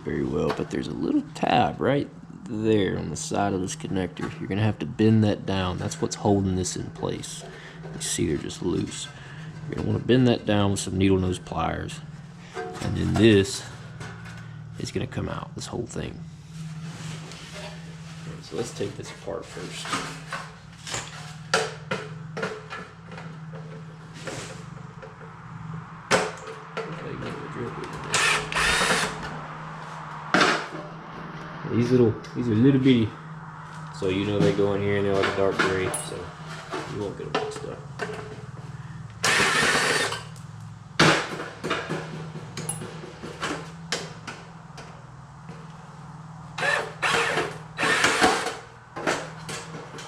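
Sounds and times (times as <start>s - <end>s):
steady low hum: 0.0s - 50.0s
metal parts clinking: 35.8s - 36.6s
hand tools clicking on metal parts: 39.1s - 40.4s.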